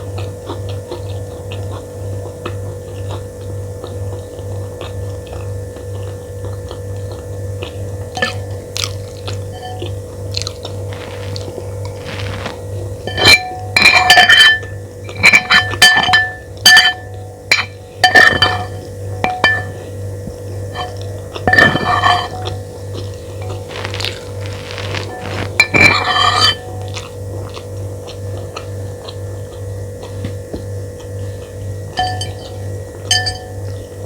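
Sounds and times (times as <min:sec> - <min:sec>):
steady low hum: 0:00.0 - 0:34.0
metal spoon clinking on plate: 0:08.2 - 0:08.6, 0:09.5 - 0:09.9, 0:13.1 - 0:19.8, 0:20.8 - 0:22.6, 0:32.0 - 0:33.6.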